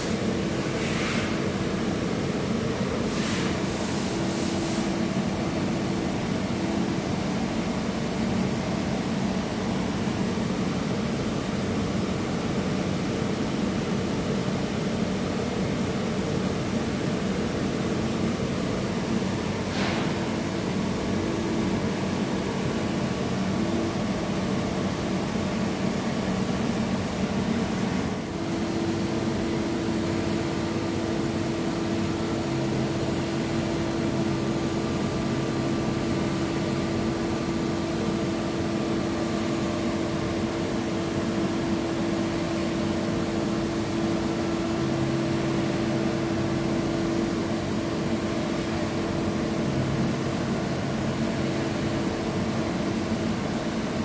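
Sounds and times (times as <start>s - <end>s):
machine hum with hiss: 0.0s - 54.0s.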